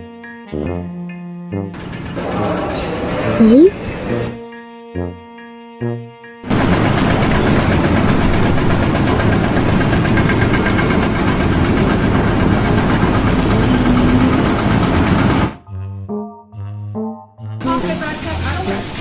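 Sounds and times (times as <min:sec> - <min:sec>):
engine running: 0:01.6 - 0:04.4, 0:06.4 - 0:15.6.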